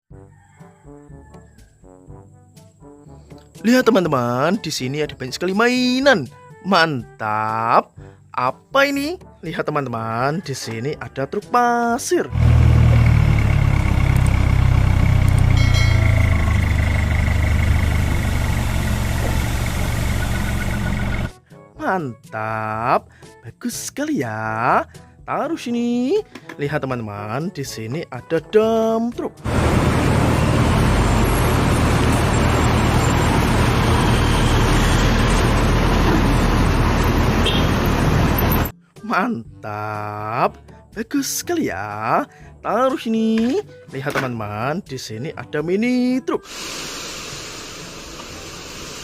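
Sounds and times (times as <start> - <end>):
truck engine running: 12.3 - 21.3, 29.4 - 38.7
road rumble: 12.3 - 21.4, 29.4 - 38.7
engine idling: 12.4 - 21.3
brief higher tone: 15.5 - 19.5.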